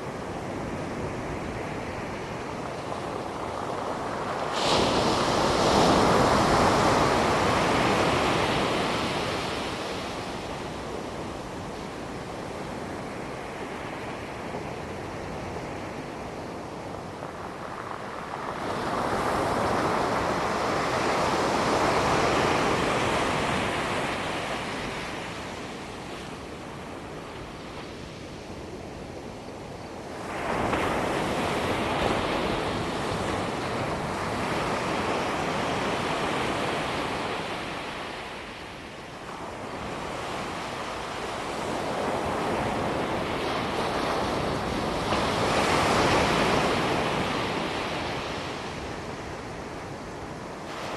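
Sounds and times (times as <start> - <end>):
ocean surf washing up beach: 0.0 - 50.9.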